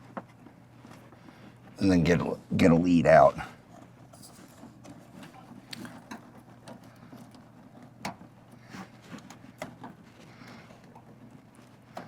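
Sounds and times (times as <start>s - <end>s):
low steady hum: 0.0s - 12.0s
small clicks and rattles of wires: 3.7s - 12.0s.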